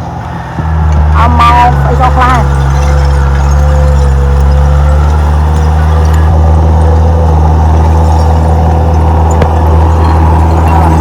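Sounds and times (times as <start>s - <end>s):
bulldozer diesel engine droning: 0.0s - 11.0s.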